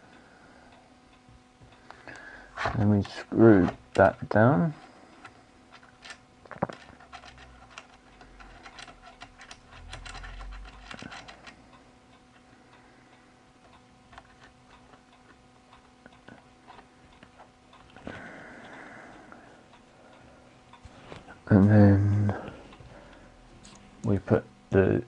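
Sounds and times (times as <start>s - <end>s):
metal parts clicking and tapping: 5.7s - 11.6s.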